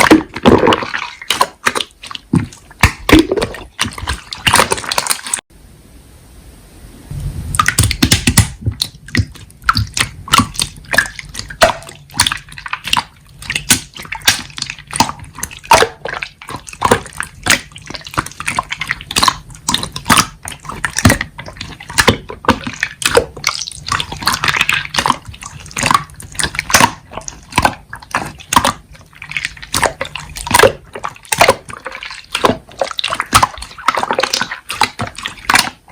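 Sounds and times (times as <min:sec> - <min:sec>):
slime squished by hand: 0:07.5 - 0:35.9.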